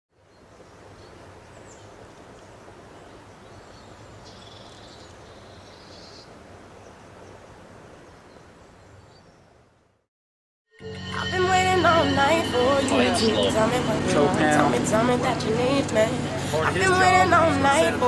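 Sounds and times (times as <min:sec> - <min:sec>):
low hum: 0:11.1 - 0:18.0.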